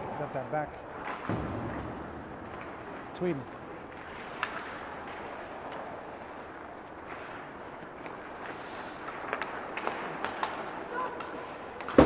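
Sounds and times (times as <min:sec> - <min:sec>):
arena noise: 0:00.0 - 0:12.0
hockey sticks and puck clacking: 0:03.6 - 0:12.0.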